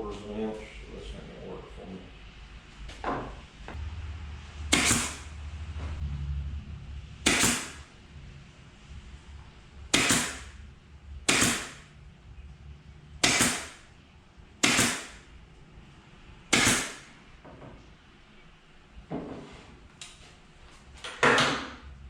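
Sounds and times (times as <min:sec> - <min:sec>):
pin nailer firing into wood: 0:04.7 - 0:05.3, 0:07.2 - 0:07.9, 0:09.9 - 0:10.6, 0:11.3 - 0:11.9, 0:13.2 - 0:13.8, 0:14.6 - 0:15.3, 0:16.5 - 0:17.2.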